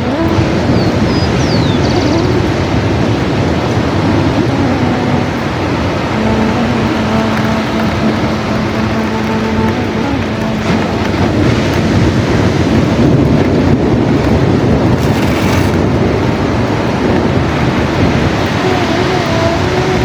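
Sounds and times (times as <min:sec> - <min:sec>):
waves breaking: 0:00.0 - 0:20.0.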